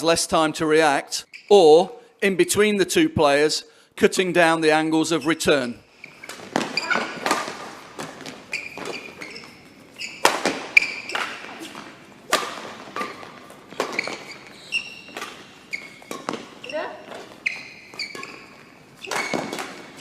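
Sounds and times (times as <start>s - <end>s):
shoes squeaking on court floor: 1.2s - 1.7s, 5.0s - 20.0s
rackets striking shuttlecock: 6.1s - 20.0s.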